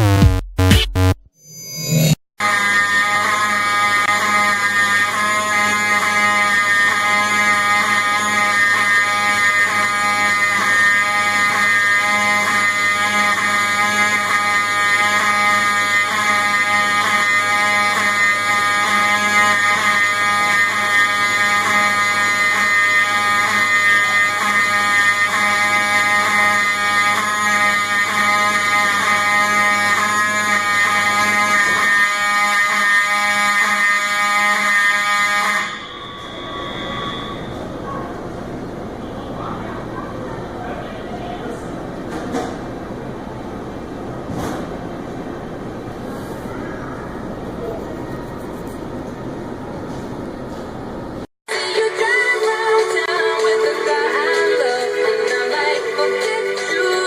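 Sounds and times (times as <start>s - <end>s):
fire alarm buzzing: 0.0s - 39.2s.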